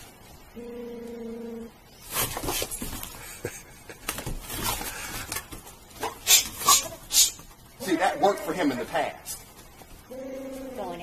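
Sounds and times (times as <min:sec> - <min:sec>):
puppy scuffling: 0:02.0 - 0:11.0.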